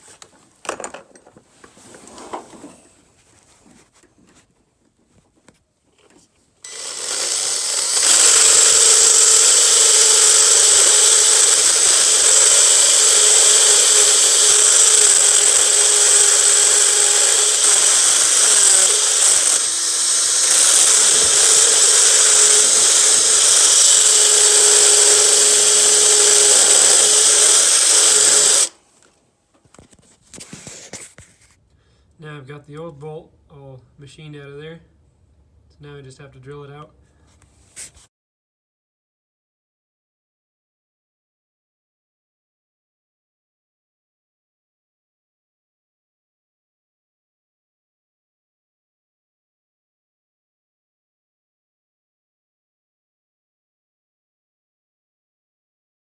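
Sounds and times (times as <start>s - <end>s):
power tool high-pitched whine: 6.6s - 28.8s.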